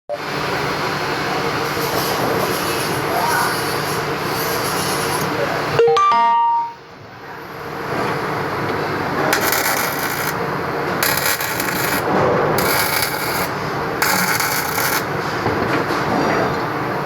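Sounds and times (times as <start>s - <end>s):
welding arc crackling and sizzling: 8.9s - 15.4s.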